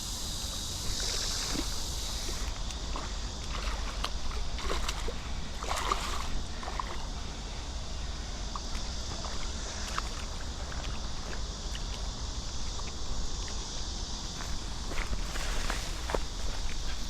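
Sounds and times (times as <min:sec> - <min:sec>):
small splashes: 0:00.8 - 0:07.2
water sloshing: 0:00.8 - 0:13.6, 0:14.3 - 0:17.0.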